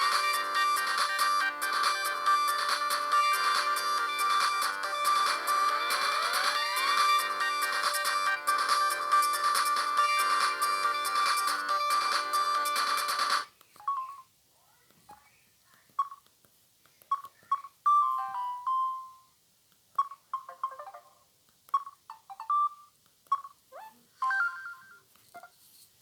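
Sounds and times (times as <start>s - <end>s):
mobile phone ringtone: 0.0s - 14.3s, 17.8s - 19.3s, 20.0s - 21.2s, 24.2s - 25.0s
phone key beeps: 13.8s - 14.3s, 21.7s - 23.6s.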